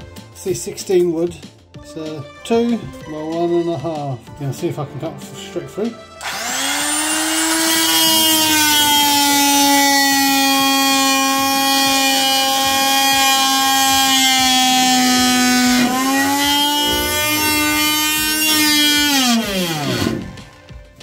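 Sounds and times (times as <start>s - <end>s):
oscillating multi-tool cutting wood: 6.2s - 20.4s.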